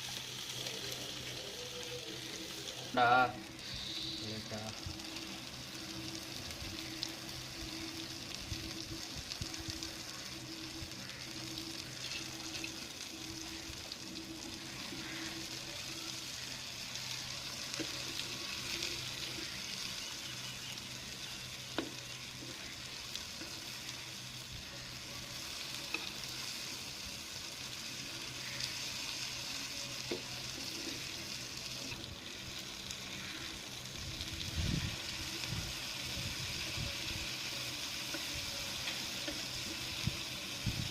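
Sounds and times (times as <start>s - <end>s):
fish frying in hot oil: 0.0s - 40.9s.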